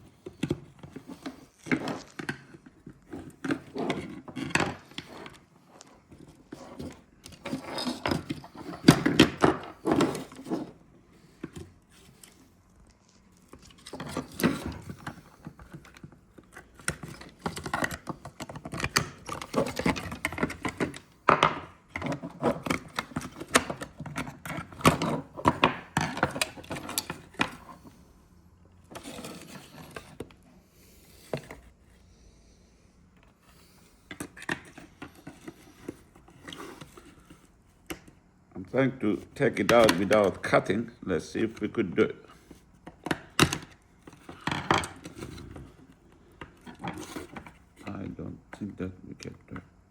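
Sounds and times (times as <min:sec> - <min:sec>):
plastic and metal parts rattling: 0:00.2 - 0:27.9.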